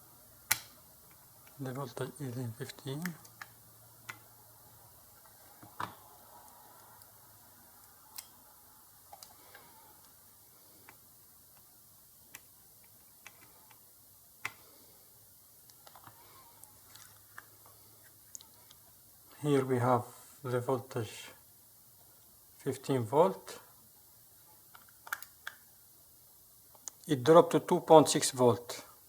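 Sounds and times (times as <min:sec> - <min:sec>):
small clicks and taps: 0:24.7 - 0:25.6.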